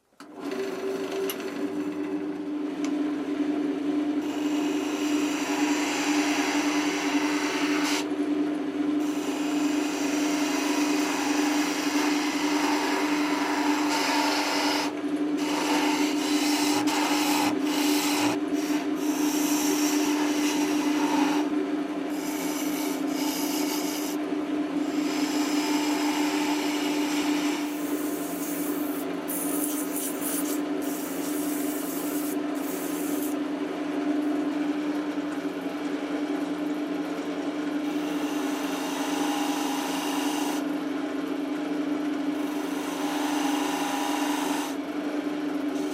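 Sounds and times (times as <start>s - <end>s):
wood lathe humming: 0.2s - 2.5s, 3.9s - 8.3s, 9.0s - 33.4s, 37.8s - 40.7s, 42.4s - 44.8s
tool rubbing spinning wood: 4.2s - 8.1s, 9.0s - 24.2s, 24.8s - 33.4s, 37.8s - 40.7s, 42.4s - 44.8s.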